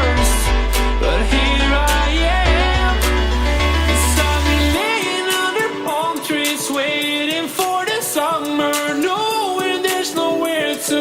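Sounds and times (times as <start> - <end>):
pop song with singing: 0.0 - 11.0.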